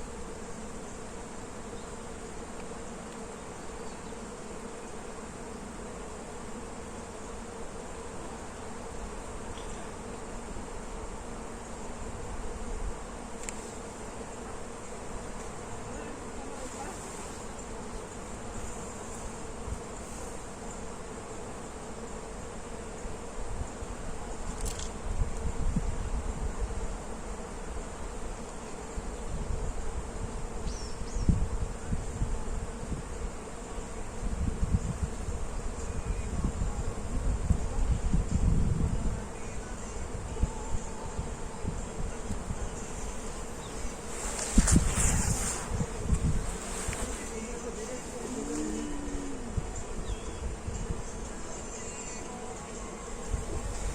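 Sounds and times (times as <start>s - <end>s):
bees buzzing: 0.0s - 53.9s
wind gusting on microphone: 24.9s - 27.0s, 29.3s - 33.4s, 34.2s - 39.4s, 40.0s - 51.2s, 53.2s - 53.9s
wind rushing: 43.8s - 47.5s.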